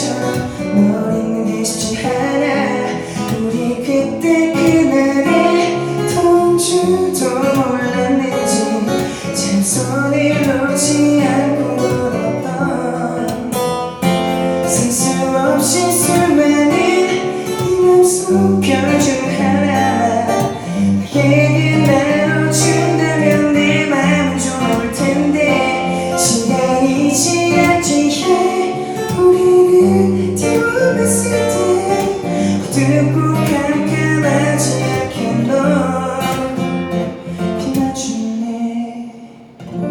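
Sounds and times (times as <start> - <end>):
person singing: 0.0 - 39.9
band with guitar bass and drums: 13.2 - 37.9.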